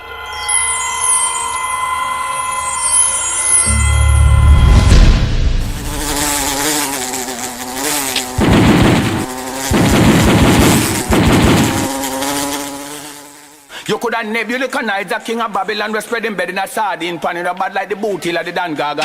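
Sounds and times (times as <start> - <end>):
wavering buzzing tone: 0.0 - 12.8
loud low rumbling: 3.7 - 6.8.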